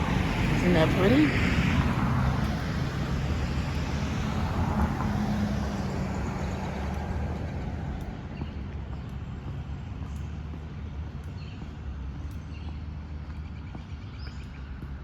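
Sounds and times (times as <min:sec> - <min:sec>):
passing vehicle engine and tyres: 0:00.0 - 0:15.0.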